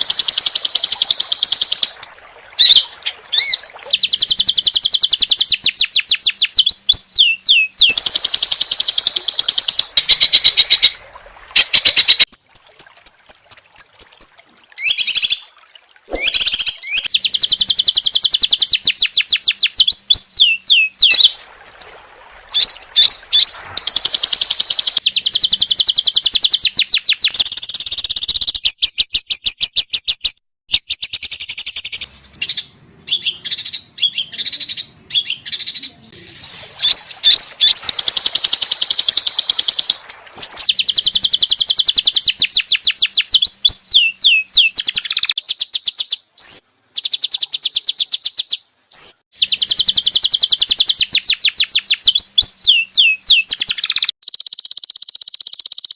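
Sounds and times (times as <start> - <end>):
songbird trilling and chirping: 0.0 - 10.9, 22.5 - 55.9.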